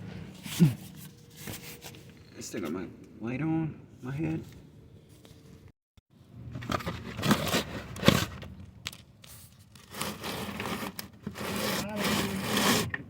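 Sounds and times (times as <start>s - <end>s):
scraping and crinkling handling noises: 0.0s - 2.8s, 6.5s - 13.0s.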